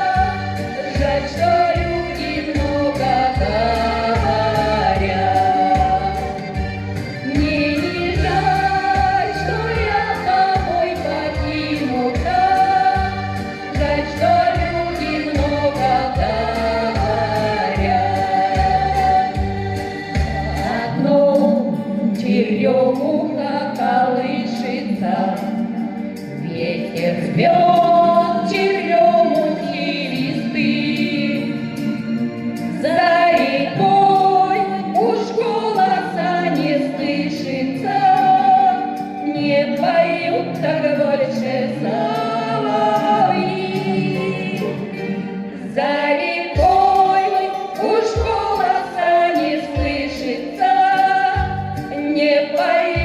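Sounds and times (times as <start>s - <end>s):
backing track bass line: 0.0s - 20.9s
two women singing: 0.0s - 53.0s.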